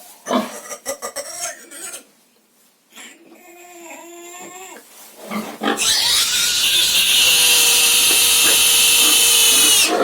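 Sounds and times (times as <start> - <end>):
pig squealing: 5.7 - 10.0.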